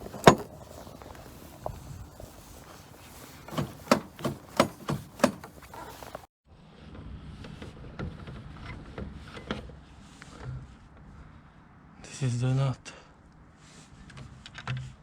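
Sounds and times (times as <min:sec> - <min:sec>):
tools knocking on metal: 0:00.0 - 0:06.2
handling noise with light clicks: 0:00.0 - 0:06.3.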